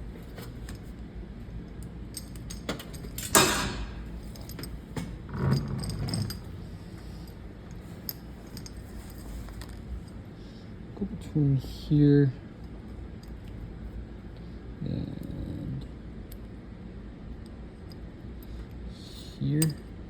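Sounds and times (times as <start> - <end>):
metal clank: 2.6 - 4.1
small metallic clicks and clinks: 19.6 - 19.9.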